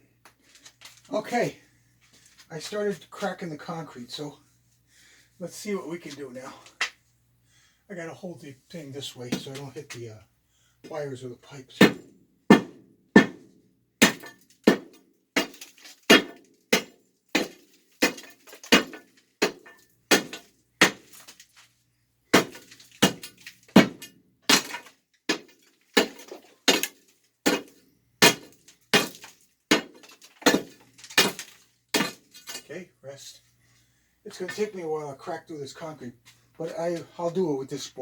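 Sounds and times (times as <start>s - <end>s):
pry bar striking concrete floor: 14.0s - 21.3s, 22.4s - 32.7s.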